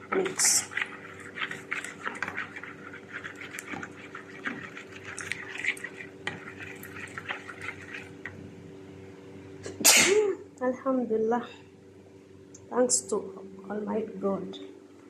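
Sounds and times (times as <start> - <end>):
steady low hum: 0.0 - 15.0
spoon scraping and tapping a pot: 0.2 - 8.1.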